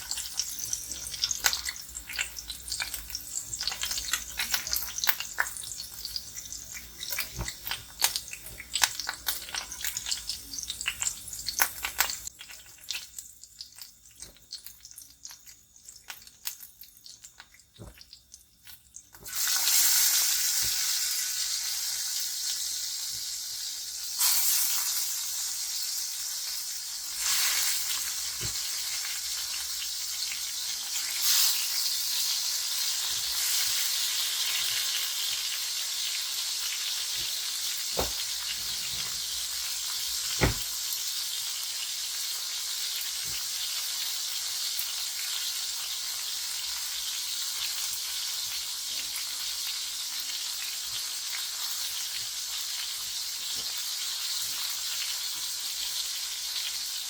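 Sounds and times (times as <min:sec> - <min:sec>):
food sizzling in a frying pan: 0:00.0 - 0:57.0
utensil knocking on pan: 0:40.4 - 0:40.7.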